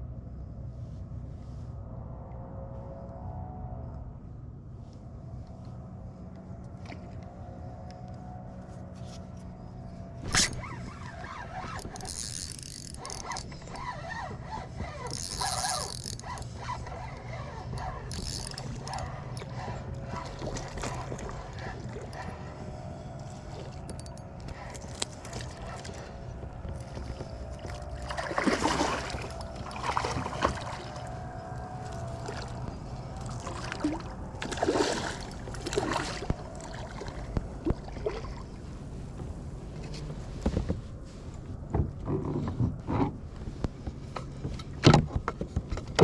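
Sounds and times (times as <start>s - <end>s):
water splashing against kayak: 10.2s - 39.2s.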